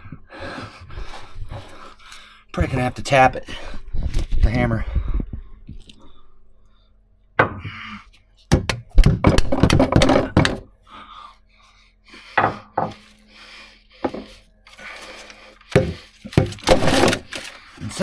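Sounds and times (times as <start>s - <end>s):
hammer striking metal joint: 8.5s - 10.7s.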